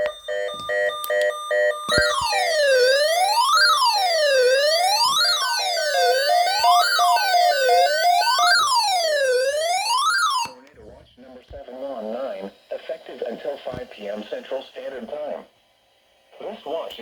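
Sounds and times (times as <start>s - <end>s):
siren-like alert wail: 0.0s - 10.6s.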